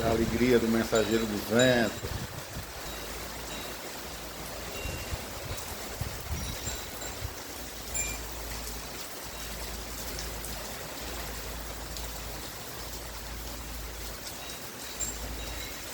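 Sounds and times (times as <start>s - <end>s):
wind chime tinkling: 0.0s - 9.8s, 14.3s - 15.9s
heavy rain falling: 0.0s - 15.9s.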